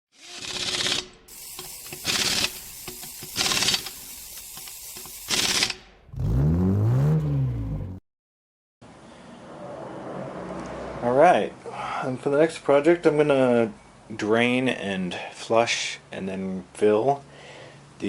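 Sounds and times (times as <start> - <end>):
fast mechanical clicking: 0.2 - 5.9
loud hissing bursts: 1.3 - 5.8
tone rising and falling in pitch: 6.1 - 8.0.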